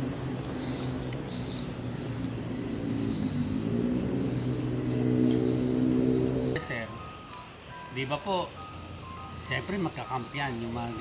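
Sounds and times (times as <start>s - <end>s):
crickets and insects chirping: 0.0s - 11.0s.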